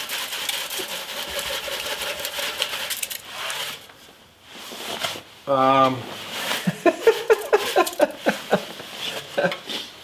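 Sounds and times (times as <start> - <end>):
ice rattling in metal tank: 0.0 - 3.9, 7.0 - 8.2.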